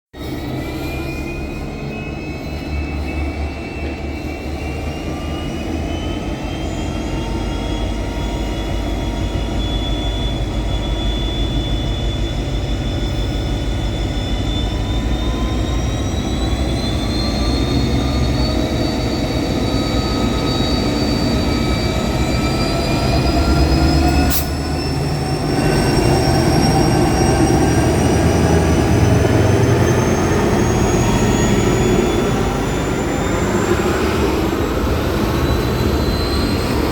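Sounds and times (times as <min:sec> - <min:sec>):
diesel locomotive engine drone: 0:00.2 - 0:36.9
high whine rising in pitch: 0:00.2 - 0:36.9.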